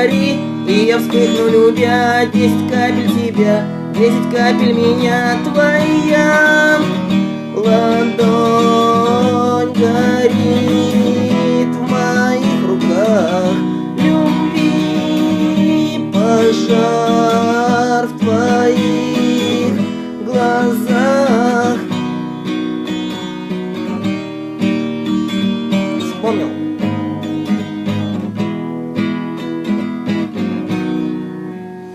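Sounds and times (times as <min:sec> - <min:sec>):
man singing long notes: 0:00.0 - 0:22.1
acoustic guitar strumming chords: 0:00.0 - 0:31.9.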